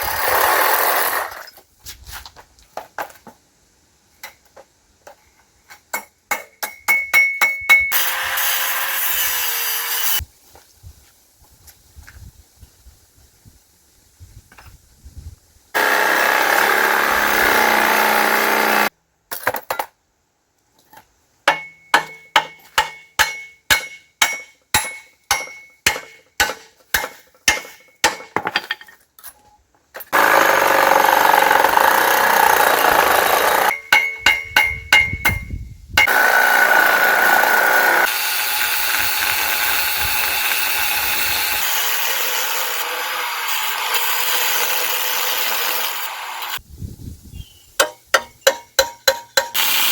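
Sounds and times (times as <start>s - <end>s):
hammer striking metal: 5.9s - 8.0s, 21.5s - 28.5s, 33.7s - 36.2s, 47.8s - 49.6s
angle grinder grinding steel: 7.9s - 10.2s, 15.8s - 18.9s, 36.0s - 46.6s, 49.3s - 49.9s.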